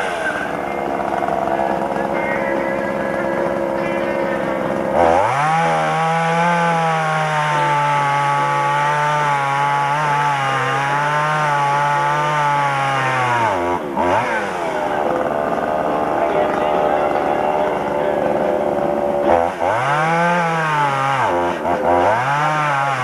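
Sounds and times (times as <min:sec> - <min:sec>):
chainsaw revving: 0:00.0 - 0:23.0.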